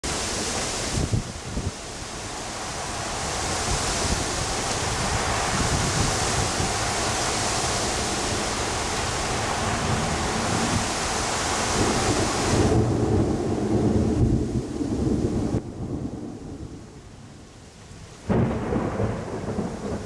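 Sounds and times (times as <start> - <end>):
steady hiss of rain: 0.0 - 20.0
rolling thunder: 11.8 - 17.3, 18.2 - 20.0.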